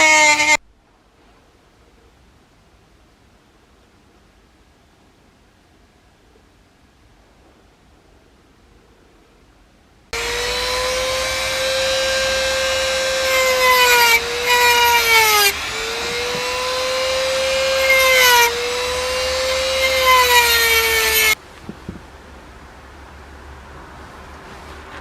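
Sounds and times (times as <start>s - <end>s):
electric grinder whine: 0.0s - 0.6s, 10.2s - 21.4s
harsh grinding rasp: 0.0s - 0.6s, 10.2s - 21.4s.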